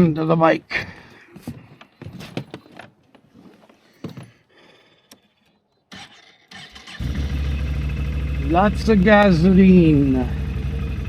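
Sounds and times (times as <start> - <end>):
engine cranking and idling: 5.9 - 11.0.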